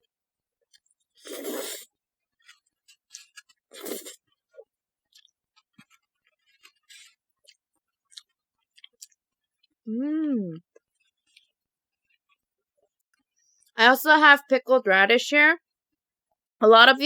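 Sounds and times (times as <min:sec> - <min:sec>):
noodle slurping: 0:01.1 - 0:01.9, 0:03.2 - 0:04.2
wet chewing clicks: 0:05.1 - 0:09.8, 0:10.6 - 0:13.6.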